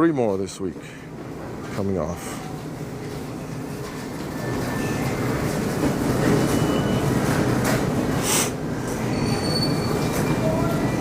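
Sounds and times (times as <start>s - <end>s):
cart squeaks: 6.2s - 7.4s, 9.0s - 11.0s.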